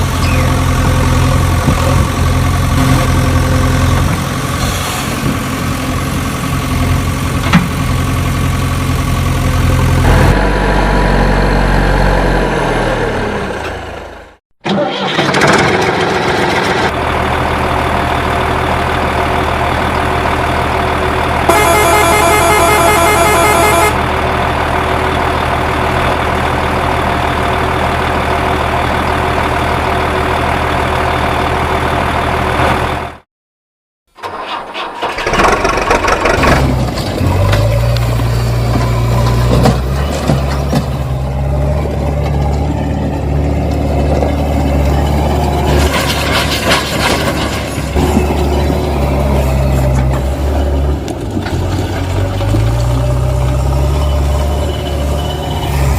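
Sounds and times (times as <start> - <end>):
engine running: 0.0 - 33.2, 34.8 - 55.9
engine starting and idling: 13.6 - 19.2, 34.1 - 37.6.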